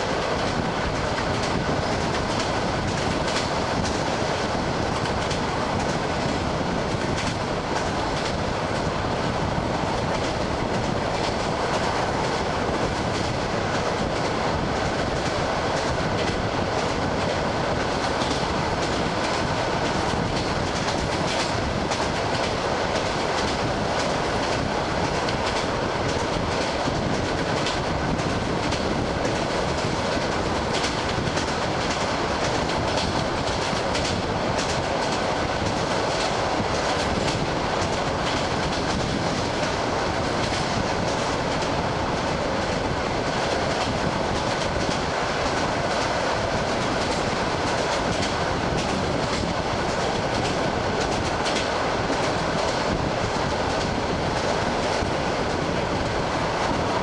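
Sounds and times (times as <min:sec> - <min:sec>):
train wheels rumbling: 0:00.0 - 0:57.0
wheels clacking over rail joints: 0:10.0 - 0:53.1.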